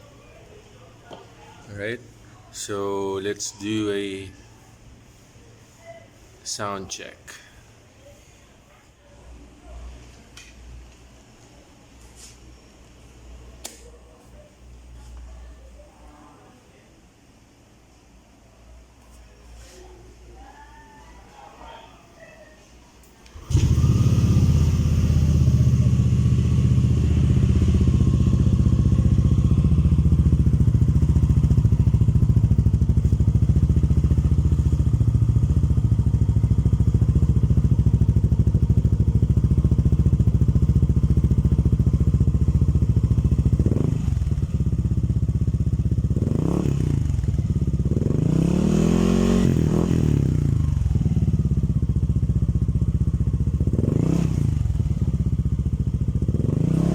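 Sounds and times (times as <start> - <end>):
scooter engine idling and revving: 23.3 - 56.9.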